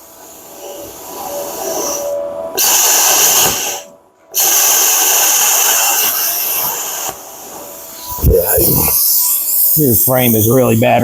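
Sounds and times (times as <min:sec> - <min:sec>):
plasma cutter hissing arc: 0:02.6 - 0:11.0.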